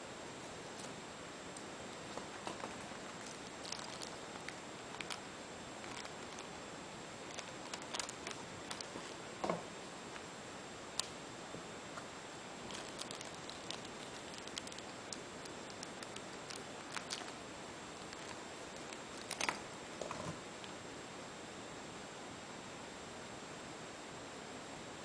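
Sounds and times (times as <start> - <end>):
steady hiss: 0.0 - 25.0
model and packaging handled: 5.8 - 6.5, 7.2 - 9.5, 12.6 - 17.4, 18.0 - 20.3.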